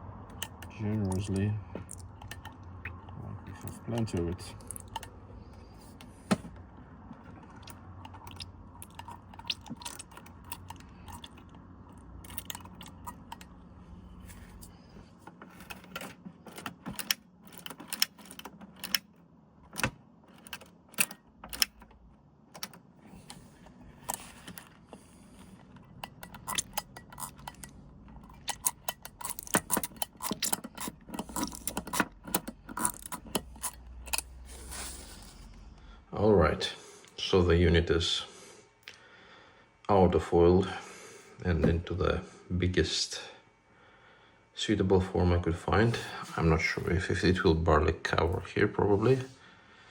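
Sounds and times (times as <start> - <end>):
steady low hum: 0.0 - 49.9
metal mechanism clicking and clinking: 0.3 - 5.2, 7.4 - 13.6, 15.4 - 23.3, 25.4 - 34.5.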